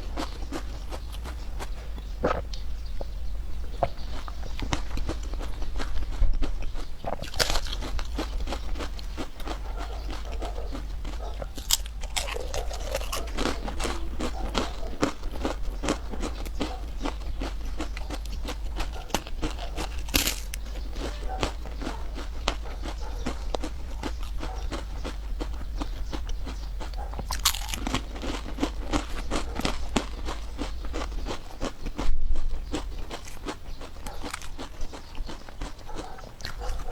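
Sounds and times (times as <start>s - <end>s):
person chewing crunchy food: 0.0s - 36.9s.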